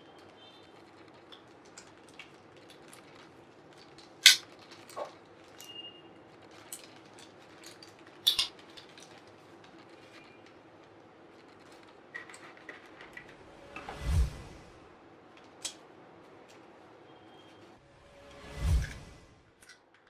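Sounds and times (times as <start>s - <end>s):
packaging crinkling: 0.0s - 13.3s.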